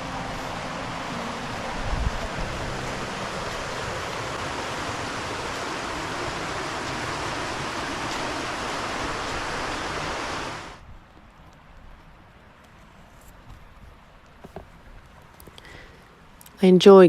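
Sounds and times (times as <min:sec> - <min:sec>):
waterfall rushing: 0:00.0 - 0:10.8.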